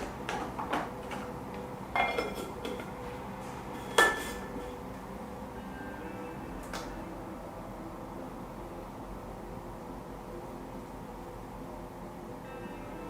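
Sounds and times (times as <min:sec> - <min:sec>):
kitchenware clinking: 0:02.0 - 0:02.9, 0:03.9 - 0:04.5.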